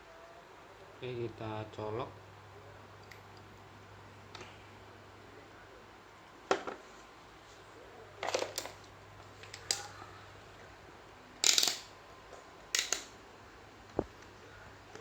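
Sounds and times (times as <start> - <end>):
faint steady hum: 0.0 - 15.0
tools clicking and clattering: 8.2 - 9.9, 11.4 - 11.9, 12.7 - 13.1.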